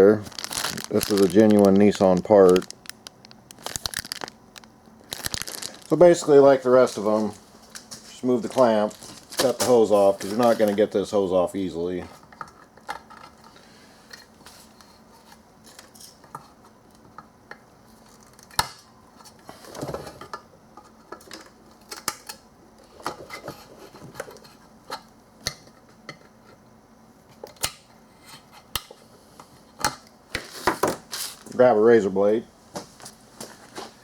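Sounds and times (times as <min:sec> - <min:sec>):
hose rustling: 0:00.1 - 0:04.3, 0:05.0 - 0:10.9.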